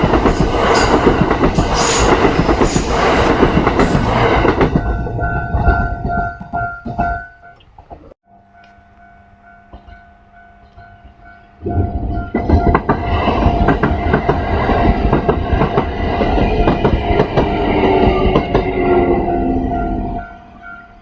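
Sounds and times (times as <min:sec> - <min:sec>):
train wheels clacking over rails: 0:00.0 - 0:07.3, 0:12.3 - 0:19.0.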